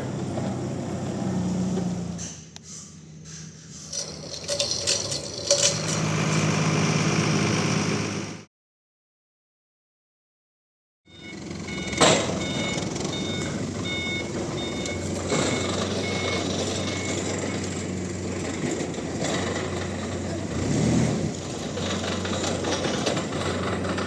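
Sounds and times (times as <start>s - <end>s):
reversing alarm beeping: 11.1s - 17.8s.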